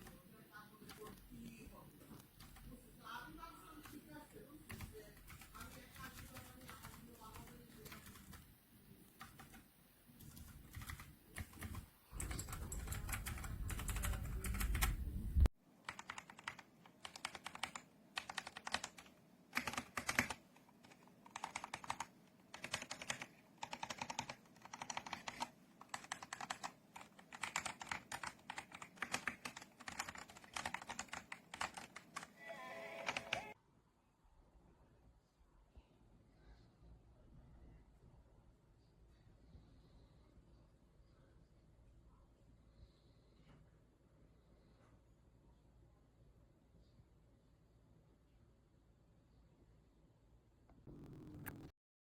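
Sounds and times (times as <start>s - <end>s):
mechanical keyboard typing: 2.2s - 2.8s, 3.7s - 8.5s, 9.1s - 9.6s, 10.2s - 32.4s, 33.0s - 33.6s.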